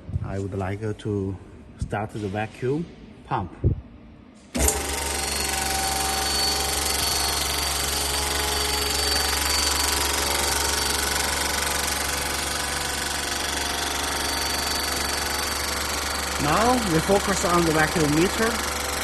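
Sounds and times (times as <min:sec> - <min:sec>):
vacuum pump humming: 0:04.5 - 0:19.0.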